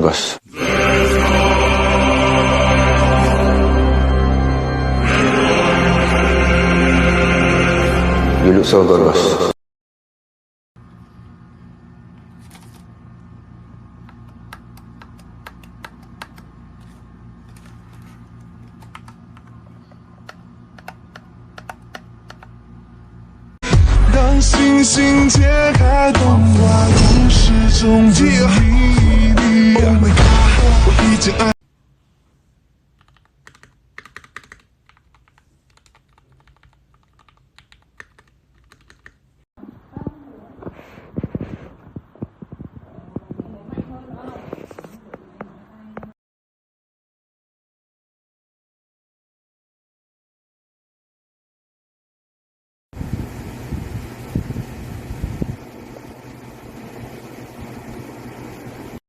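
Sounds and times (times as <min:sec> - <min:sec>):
mechanical keyboard typing: 0:14.2 - 0:17.8, 0:18.6 - 0:19.6, 0:20.2 - 0:22.6, 0:33.0 - 0:39.2
faint steady hum: 0:53.0 - 0:59.0.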